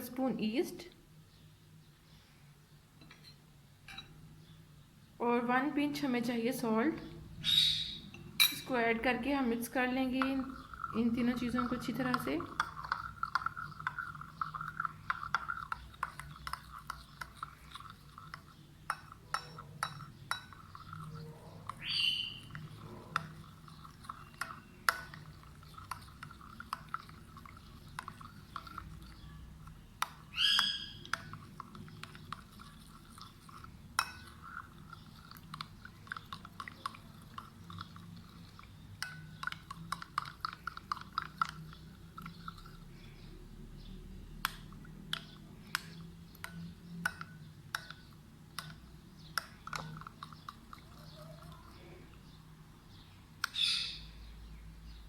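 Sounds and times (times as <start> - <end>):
spoon clinking in cup: 3.2 - 4.2, 8.1 - 8.8, 10.0 - 42.8
bird calls: 7.4 - 8.1, 21.8 - 22.6, 30.3 - 31.0, 52.9 - 54.2.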